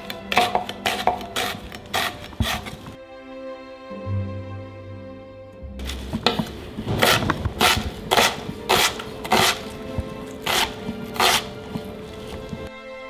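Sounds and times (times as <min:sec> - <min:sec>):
knife chopping on cutting board: 0:00.0 - 0:03.0, 0:05.8 - 0:12.7
background music: 0:00.0 - 0:13.0.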